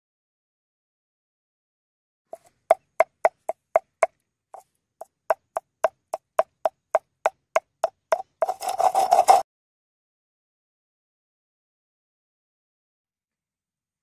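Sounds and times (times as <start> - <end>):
knife chopping on cutting board: 2.4 - 4.1, 5.0 - 9.4.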